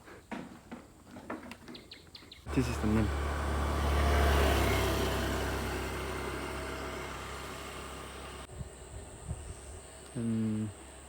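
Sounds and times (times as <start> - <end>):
vehicle passing by: 2.5 - 8.5.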